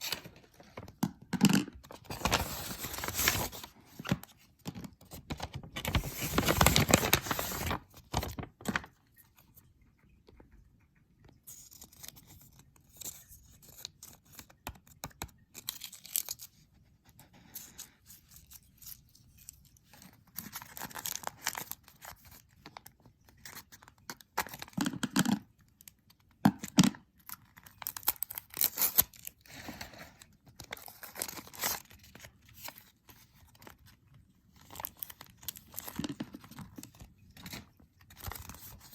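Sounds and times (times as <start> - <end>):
packaging crinkling: 0.0 - 9.0
plastic wrapper ripping: 5.4 - 8.9.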